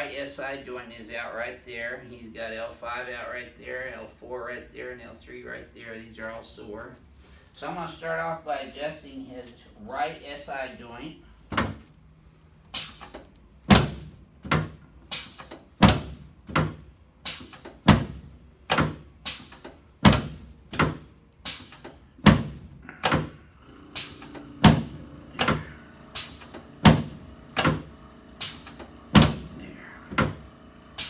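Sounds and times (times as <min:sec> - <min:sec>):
adjusting table thumping: 0:17.5 - 0:21.1, 0:21.8 - 0:23.4, 0:24.0 - 0:27.9, 0:28.7 - 0:30.4.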